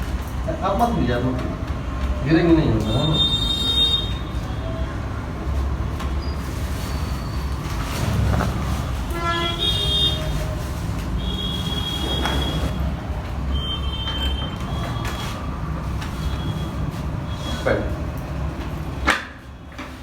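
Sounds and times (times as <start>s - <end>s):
low rumble of road traffic: 0.0s - 20.0s
car horn: 8.0s - 10.5s.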